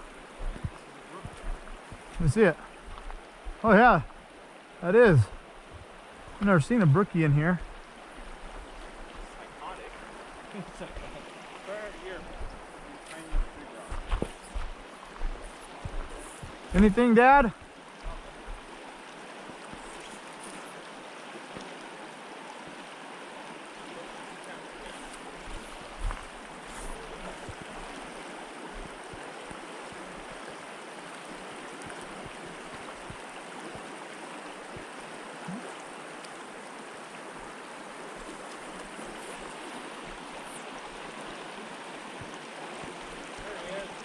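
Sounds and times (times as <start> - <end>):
stream water flowing: 0.0 - 44.0.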